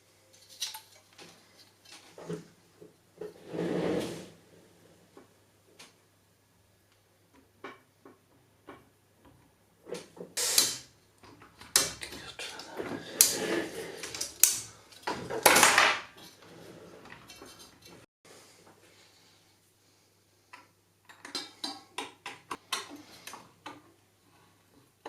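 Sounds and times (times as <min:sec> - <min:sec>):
rustling and scraping: 0:00.3 - 0:05.2, 0:11.7 - 0:18.1.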